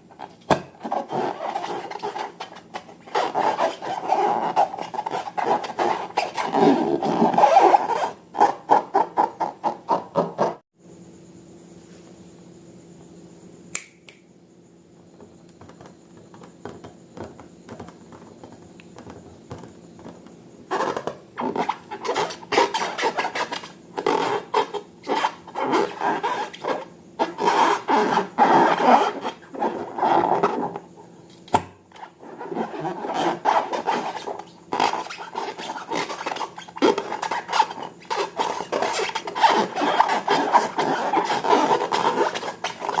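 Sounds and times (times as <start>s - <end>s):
click: 13.7s - 14.2s.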